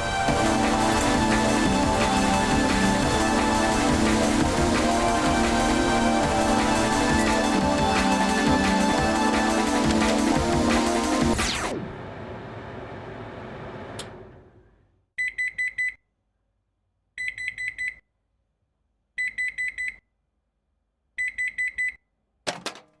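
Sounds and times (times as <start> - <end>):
microwave oven beeping: 0.0 - 14.6.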